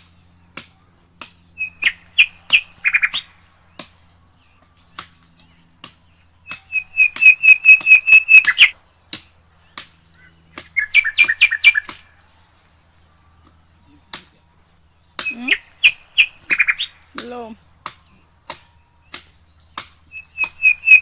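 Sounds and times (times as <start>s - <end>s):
bird calling sharp notes: 1.6s - 3.5s, 6.4s - 8.8s, 10.1s - 12.3s, 15.2s - 18.2s, 19.9s - 21.0s
sharp clicks: 5.0s - 9.3s.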